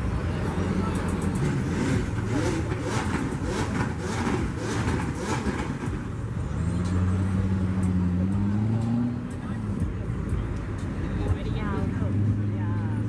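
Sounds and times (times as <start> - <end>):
car engine revving: 0.0 - 13.0
rasping exhaust bursts: 1.0 - 9.0.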